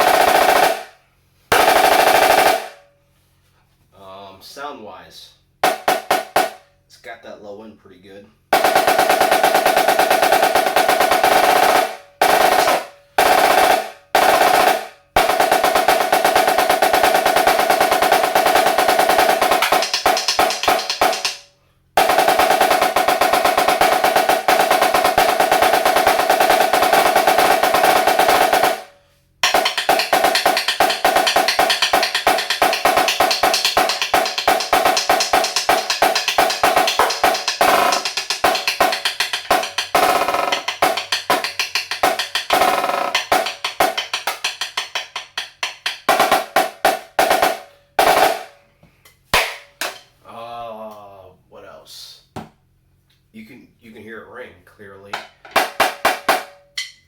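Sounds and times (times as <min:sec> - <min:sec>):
snare drum rolls and strokes: 0:00.0 - 0:02.8, 0:05.6 - 0:06.7, 0:08.5 - 0:48.6, 0:55.6 - 0:56.6.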